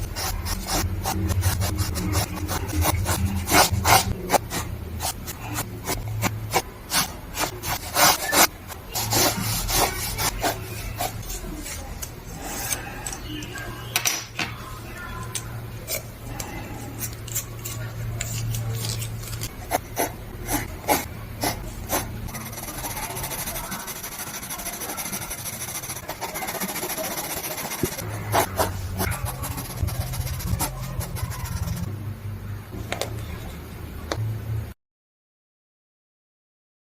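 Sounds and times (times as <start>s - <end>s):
drawing tool scratching paper: 0.0s - 11.8s, 17.3s - 31.9s.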